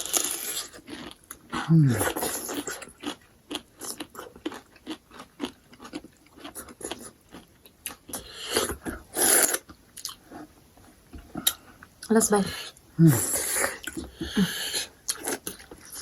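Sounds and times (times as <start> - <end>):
crunchy chewing: 0.0 - 10.2.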